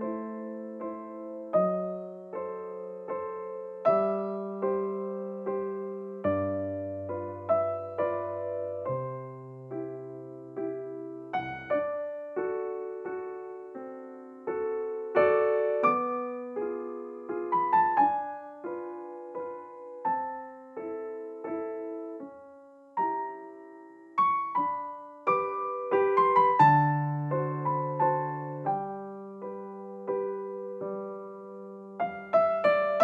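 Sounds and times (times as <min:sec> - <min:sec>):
solo piano melody: 0:00.0 - 0:33.0.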